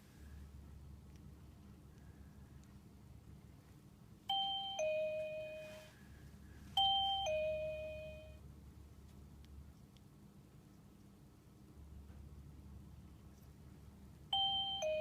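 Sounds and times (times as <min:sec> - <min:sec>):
two-note door chime: 0:04.3 - 0:05.9, 0:06.8 - 0:08.4, 0:14.3 - 0:15.0.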